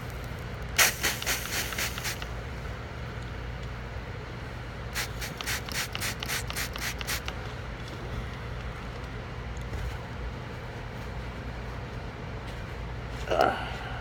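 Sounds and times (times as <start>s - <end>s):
water hissing on hot metal: 0.8s - 2.2s, 5.0s - 7.2s.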